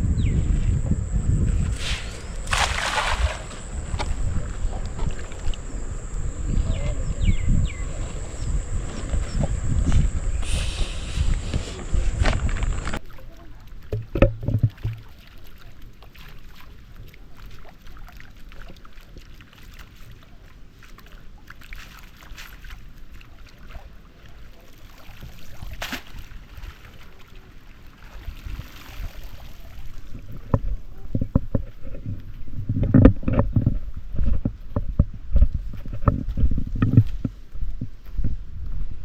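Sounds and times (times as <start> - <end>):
water sloshing in pond: 1.5 - 32.2.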